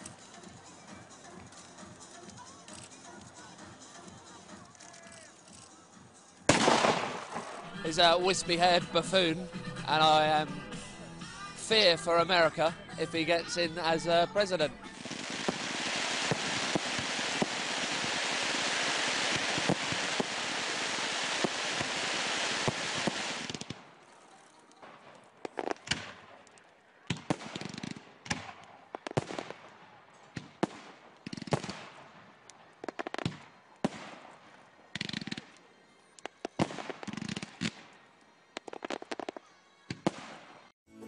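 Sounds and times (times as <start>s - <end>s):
fireworks crackling: 0.0s - 40.7s
fireworks bangs: 6.5s - 8.4s, 14.8s - 23.9s, 27.1s - 35.5s, 36.2s - 37.9s, 38.6s - 40.7s.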